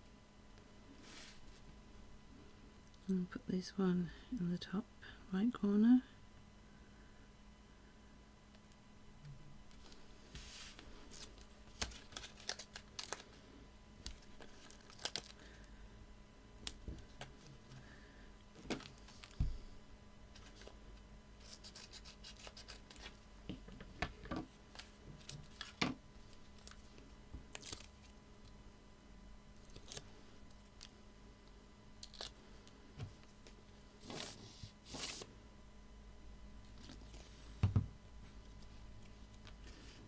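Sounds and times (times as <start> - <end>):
paper clicks and rustles: 10.6 - 13.4, 14.0 - 15.6, 24.7 - 28.1
soft knocks on a desk: 37.6 - 37.9.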